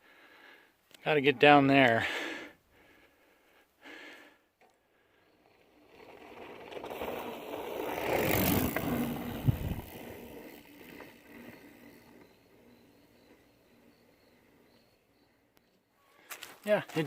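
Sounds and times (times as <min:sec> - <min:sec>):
bike tires rolling on dirt: 0:04.8 - 0:15.6, 0:16.2 - 0:17.0
wind noise: 0:08.2 - 0:10.2.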